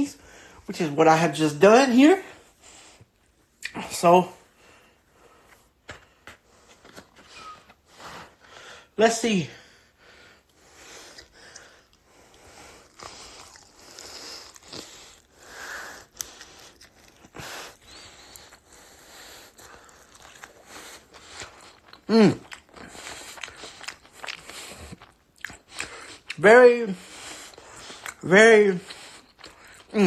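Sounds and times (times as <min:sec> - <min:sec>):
person chewing crunchy food: 0:10.4 - 0:26.4, 0:27.0 - 0:30.0.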